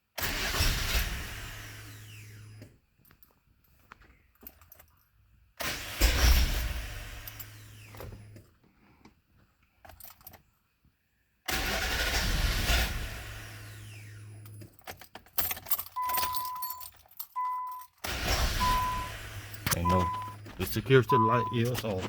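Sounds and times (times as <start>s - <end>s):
car engine cranking: 0.2s - 2.7s, 5.6s - 8.4s, 11.5s - 22.0s
short electronic beep: 18.6s - 21.8s.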